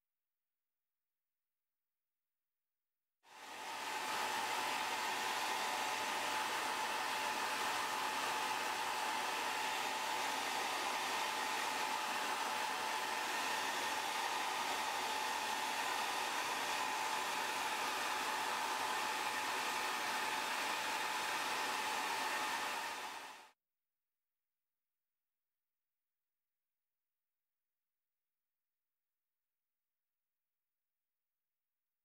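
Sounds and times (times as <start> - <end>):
hot-air tool blowing: 3.3 - 23.6.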